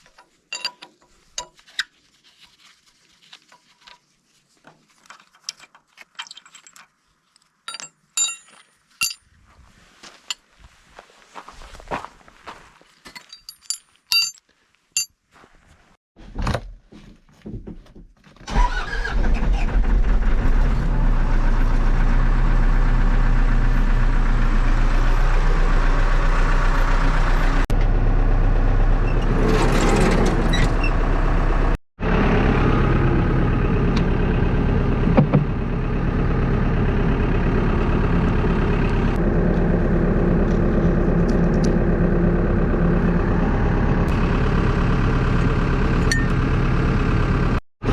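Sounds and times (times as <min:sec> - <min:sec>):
diesel engine starting and running: 0:18.4 - 0:47.9.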